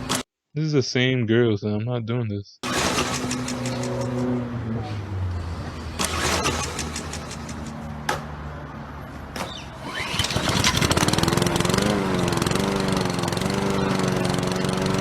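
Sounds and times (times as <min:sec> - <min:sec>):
lawn mower engine starting: 0:00.0 - 0:00.2, 0:02.6 - 0:04.4, 0:05.8 - 0:08.0, 0:09.5 - 0:15.0.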